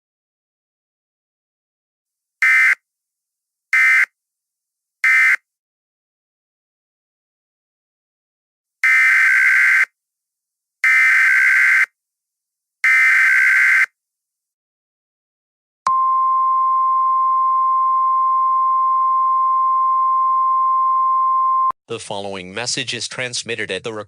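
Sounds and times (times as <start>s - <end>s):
steady single-pitch alert tone: 15.9s - 21.8s.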